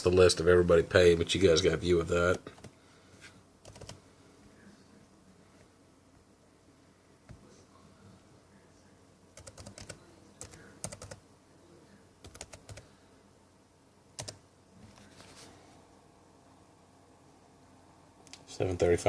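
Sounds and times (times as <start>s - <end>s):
faint keyboard typing: 2.2s - 2.8s, 3.6s - 4.1s, 9.4s - 11.2s, 12.2s - 13.0s, 14.2s - 15.5s.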